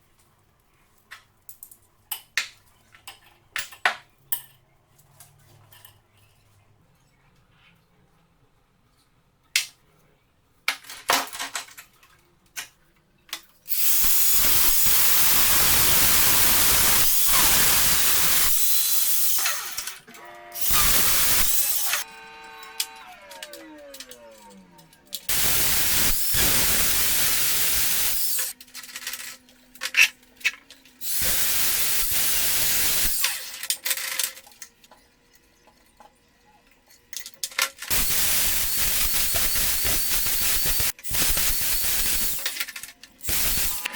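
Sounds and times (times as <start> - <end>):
bursts of hissing: 13.7 - 19.5, 20.6 - 22.0, 25.3 - 28.5, 31.0 - 33.4, 37.9 - 42.5, 43.2 - 43.9.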